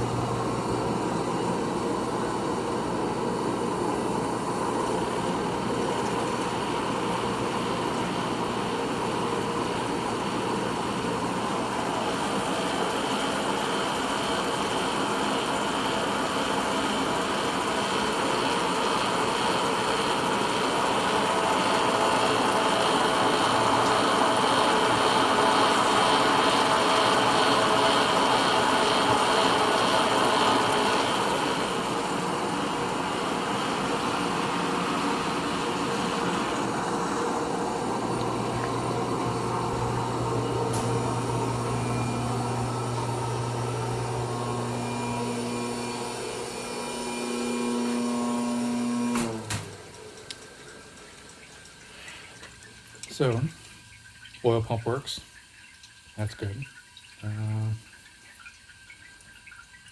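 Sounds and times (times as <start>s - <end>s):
lathe gear head whirring: 0.0s - 50.3s.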